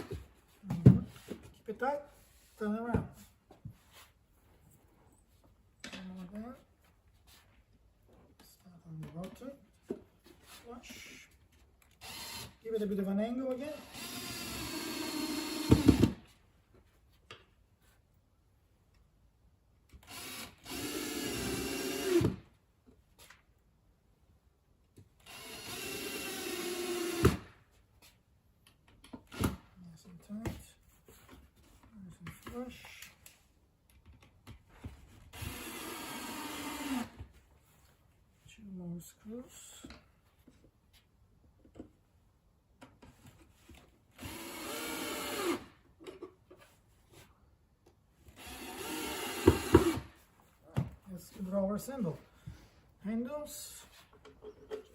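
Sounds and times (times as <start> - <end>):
cordless drill driving screws: 12.0 - 12.6, 13.8 - 16.2, 20.0 - 22.4, 25.2 - 27.5, 35.3 - 37.2, 44.2 - 45.7, 48.3 - 50.2.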